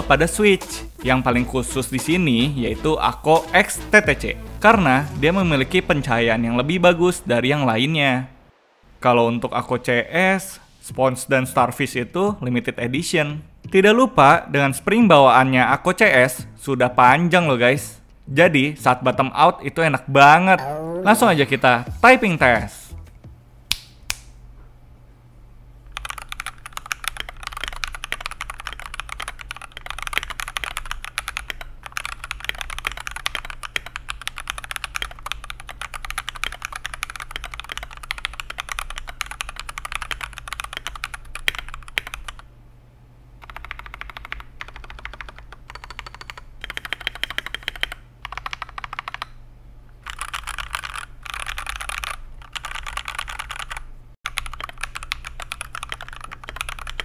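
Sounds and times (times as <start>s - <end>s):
mechanical keyboard typing: 25.9s - 42.5s, 43.4s - 49.4s, 50.0s - 57.0s.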